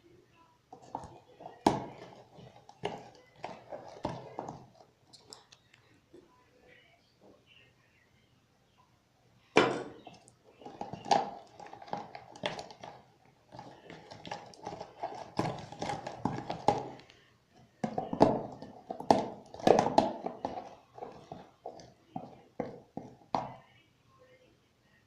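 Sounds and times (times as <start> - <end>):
spoon stirring sticky slime: 0.8 - 5.7, 9.8 - 23.6.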